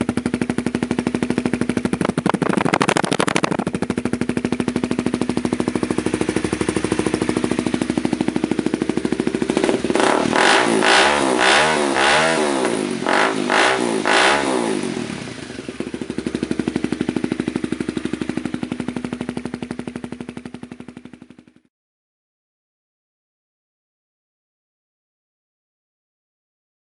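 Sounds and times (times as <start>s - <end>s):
motorcycle throttle blips: 0.0s - 21.5s
motorcycle engine idling: 0.0s - 21.7s.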